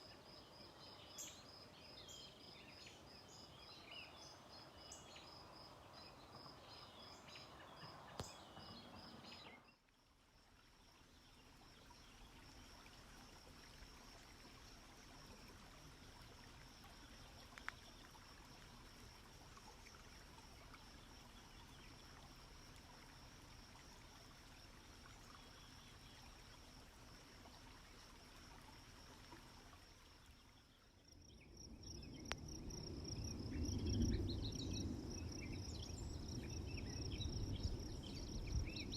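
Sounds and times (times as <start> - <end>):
faint outdoor background noise: 0.0 - 38.9
insects trilling: 29.7 - 38.9.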